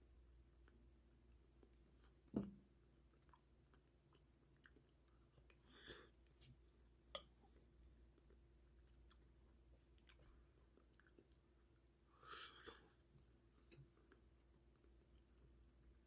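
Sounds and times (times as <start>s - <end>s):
person chewing: 3.1s - 6.5s, 7.5s - 15.3s.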